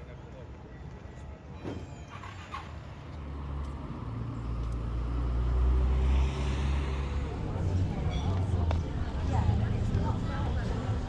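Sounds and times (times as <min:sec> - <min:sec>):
passing vehicle rumble: 0:02.2 - 0:11.0.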